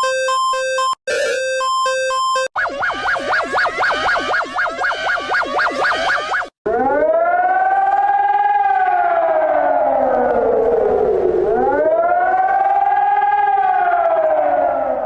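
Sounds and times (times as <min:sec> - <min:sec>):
siren wailing: 0:00.0 - 0:15.0.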